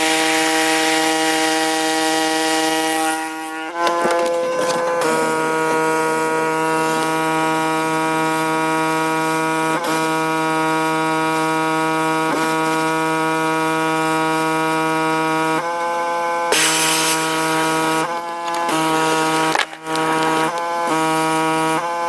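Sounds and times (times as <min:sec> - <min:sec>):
pressure washer droning: 0:16.6 - 0:21.3.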